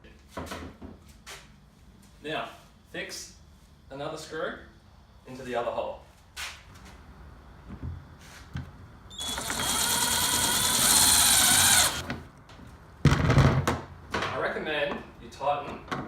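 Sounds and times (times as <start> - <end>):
cordless drill driving screw: 9.1 - 12.1.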